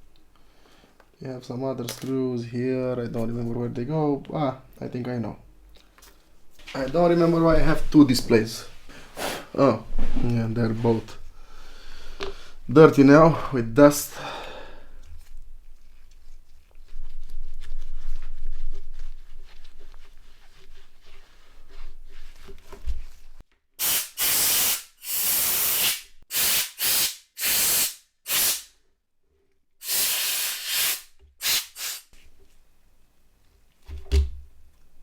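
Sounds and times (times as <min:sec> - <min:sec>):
rustling and handling noise: 0:05.6 - 0:11.4, 0:14.8 - 0:23.7
compressed air blasts hissing: 0:09.0 - 0:09.6, 0:23.8 - 0:28.7, 0:29.8 - 0:32.1.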